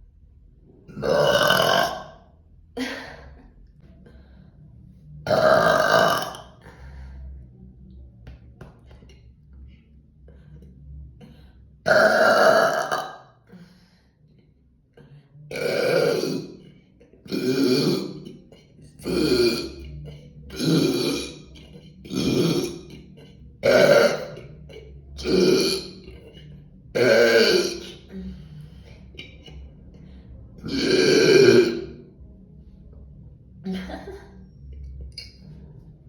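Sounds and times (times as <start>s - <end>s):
woman burping: 0.9s - 2.2s, 5.3s - 6.6s, 11.9s - 13.2s, 15.5s - 26.4s, 27.0s - 28.4s, 30.6s - 32.0s.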